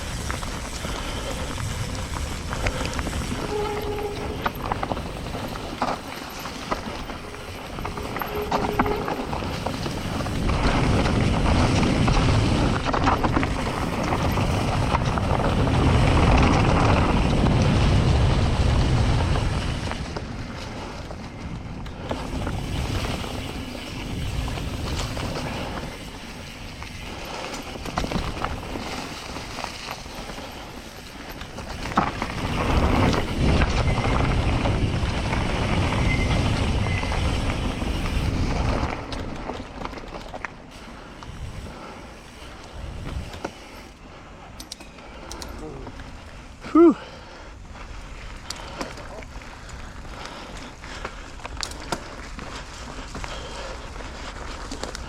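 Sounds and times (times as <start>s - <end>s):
wind buffeting microphone: 0.0s - 40.0s, 40.8s - 55.0s
tyres rumbling on dirt trail: 0.0s - 55.0s.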